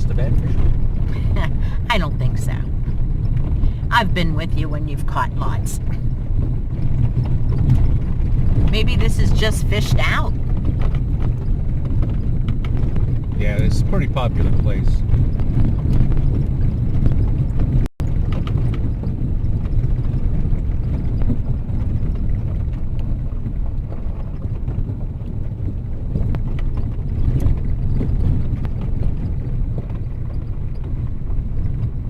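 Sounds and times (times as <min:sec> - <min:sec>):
vehicle rumble on dirt road: 0:00.0 - 0:32.0.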